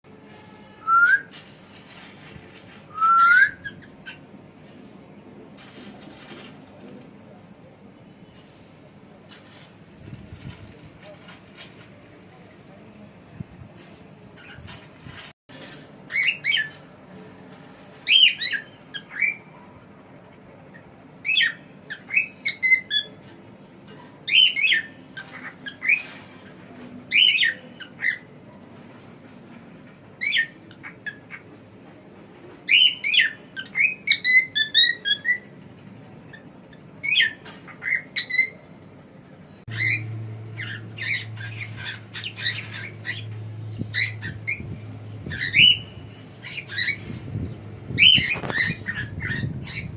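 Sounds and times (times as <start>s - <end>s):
cockatiel whistling and squawking: 2.9s - 4.2s, 39.7s - 43.3s, 45.3s - 47.1s, 48.0s - 49.9s.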